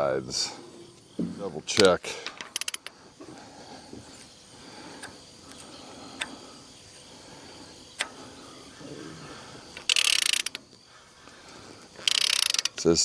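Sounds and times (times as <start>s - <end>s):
faint clicks and knocks: 0.9s - 4.1s
torque wrench ratchet clicking: 2.2s - 2.9s, 9.8s - 10.7s, 12.0s - 13.0s.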